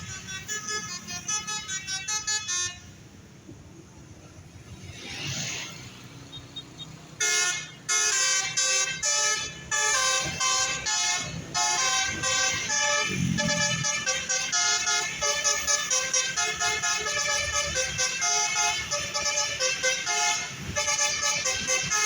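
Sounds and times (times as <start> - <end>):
musical air horn tune: 7.2 - 22.0.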